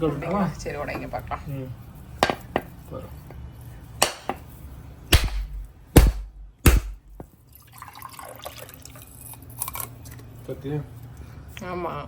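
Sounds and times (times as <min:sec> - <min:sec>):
coconut being struck: 0:02.2 - 0:02.7, 0:04.0 - 0:04.5, 0:05.1 - 0:07.3.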